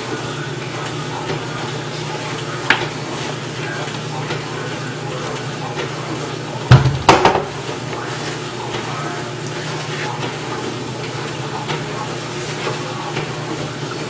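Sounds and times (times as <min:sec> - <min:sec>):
refrigerator hum: 0:00.0 - 0:14.0
container knocking and clattering: 0:06.7 - 0:07.5.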